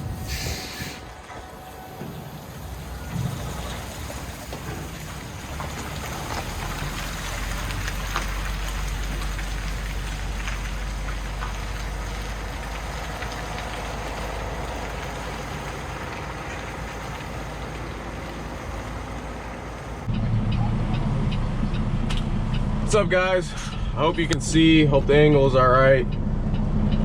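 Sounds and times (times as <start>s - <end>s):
diesel engine humming: 0.0s - 27.0s
rain pattering on truck cab: 1.1s - 20.1s.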